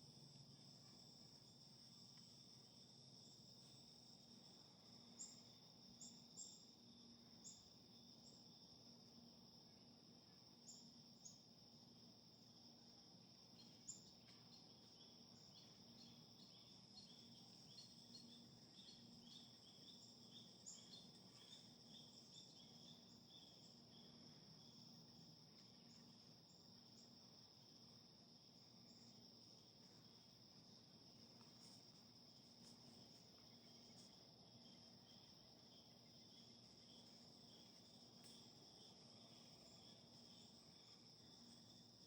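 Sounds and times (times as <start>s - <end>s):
crickets and insects trilling: 10.4s - 42.0s.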